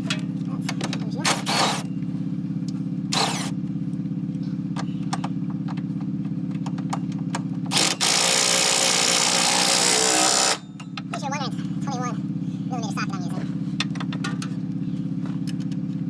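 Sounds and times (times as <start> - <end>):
pulsing machine drone: 0.0 - 6.9, 7.6 - 13.8
hissing air tool: 1.3 - 1.9, 3.1 - 3.5.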